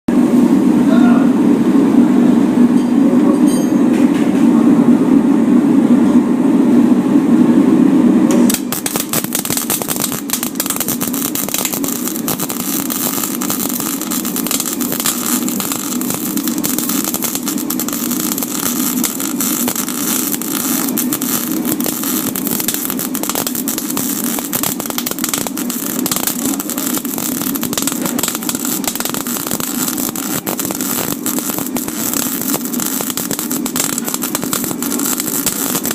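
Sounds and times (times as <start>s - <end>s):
loud steady low hum: 0.1s - 35.9s
welding arc crackling: 8.3s - 35.9s.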